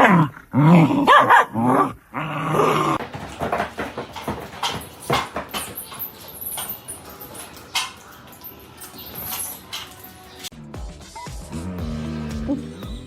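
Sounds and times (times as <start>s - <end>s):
dog barking and yowling: 0.0s - 3.0s.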